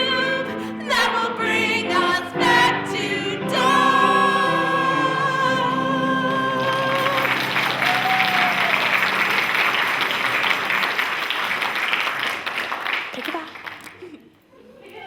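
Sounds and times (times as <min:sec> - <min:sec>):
singers holding a note: 0:00.0 - 0:09.2
audience applauding: 0:06.6 - 0:14.2.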